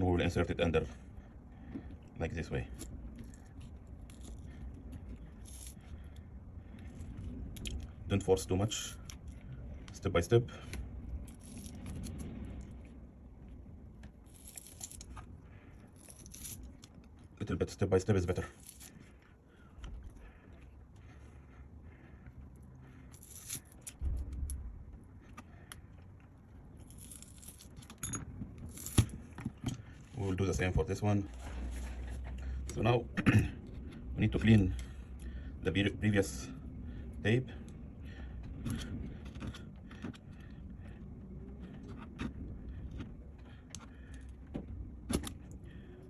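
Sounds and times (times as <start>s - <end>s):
steady low hum: 0.0s - 46.0s
prying tool clicks and scrapes: 14.0s - 17.3s, 26.8s - 30.0s.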